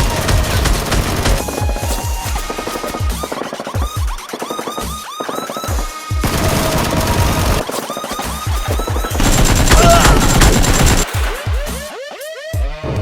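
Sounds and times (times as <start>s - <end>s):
automatic gunfire: 0.0s - 1.8s, 6.2s - 7.7s, 9.2s - 11.1s
background music: 0.0s - 13.0s.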